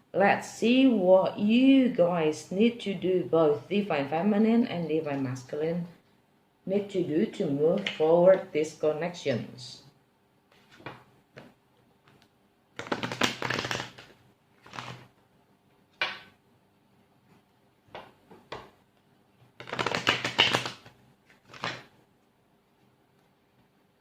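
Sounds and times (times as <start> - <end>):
cards riffling: 12.8 - 15.1, 19.6 - 21.9.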